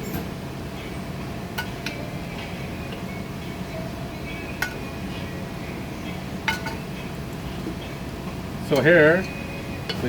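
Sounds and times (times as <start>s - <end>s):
utensil clinking against dish: 6.4s - 6.9s, 8.7s - 10.0s.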